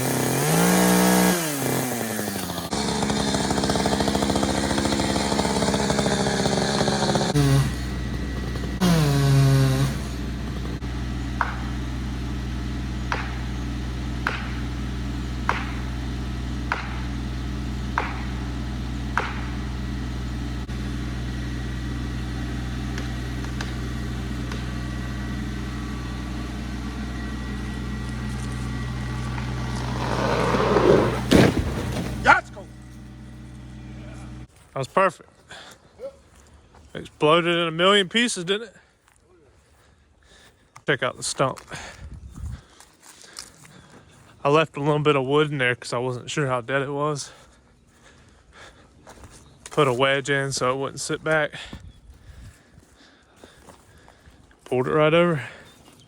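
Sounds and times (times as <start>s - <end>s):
chainsaw idling: 0.0s - 34.5s
sharp knocks: 19.1s - 19.6s
tree cracking and falling: 27.9s - 33.7s.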